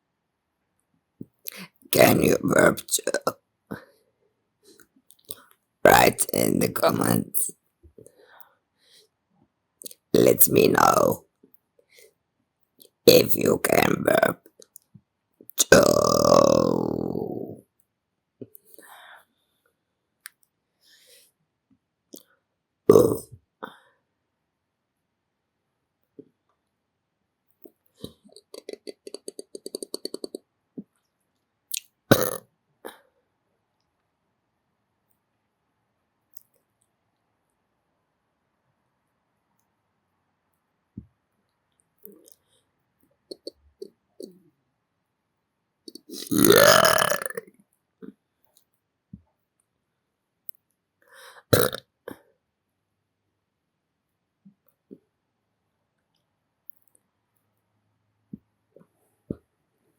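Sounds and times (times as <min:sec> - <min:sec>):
person burping: 0:01.5 - 0:03.3, 0:05.9 - 0:07.5, 0:10.2 - 0:11.2, 0:13.1 - 0:14.4, 0:15.6 - 0:17.6, 0:22.9 - 0:23.4, 0:28.1 - 0:30.4, 0:32.1 - 0:32.4, 0:45.9 - 0:47.4, 0:51.6 - 0:51.8
person belching: 0:02.0 - 0:03.3, 0:05.9 - 0:07.5, 0:10.2 - 0:11.2, 0:13.1 - 0:14.4, 0:15.6 - 0:17.6, 0:22.9 - 0:23.4, 0:28.3 - 0:30.4, 0:32.1 - 0:32.4, 0:45.9 - 0:47.4, 0:51.6 - 0:51.8
wet mouth clicks: 0:28.0 - 0:30.9, 0:31.7 - 0:32.4, 0:43.3 - 0:44.3, 0:45.9 - 0:47.4.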